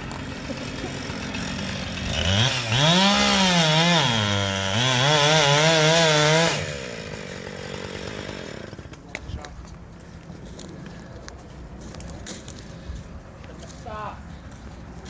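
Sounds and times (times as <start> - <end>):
chainsaw revving: 0.0 - 9.0.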